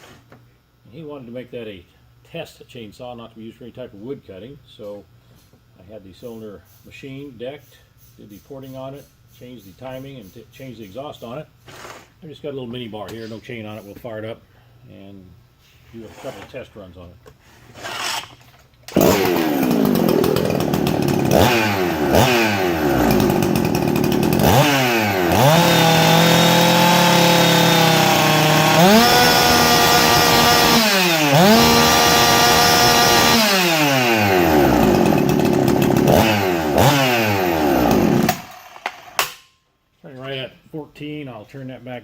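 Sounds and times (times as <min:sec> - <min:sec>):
chainsaw revving: 0:18.9 - 0:39.2.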